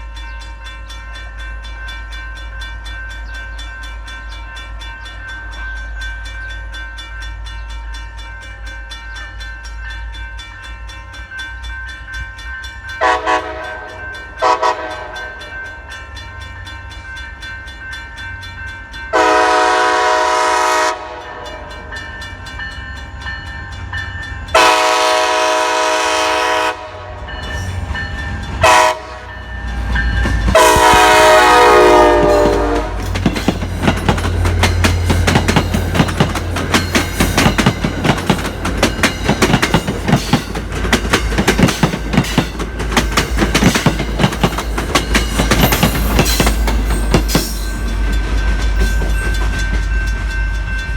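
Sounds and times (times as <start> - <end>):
train wheels clacking on rails: 0.0 - 50.9
train air horn blasts: 13.0 - 15.4, 19.1 - 21.4, 24.5 - 27.4, 28.6 - 29.5, 30.5 - 33.2
locomotive engine rumble: 18.5 - 50.9.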